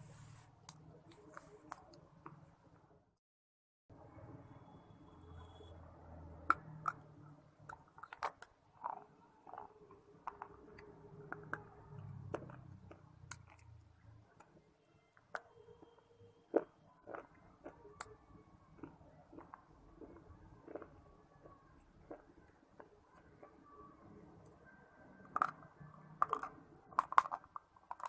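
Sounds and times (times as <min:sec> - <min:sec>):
person chewing hard clay: 0:06.5 - 0:14.6, 0:15.2 - 0:28.0.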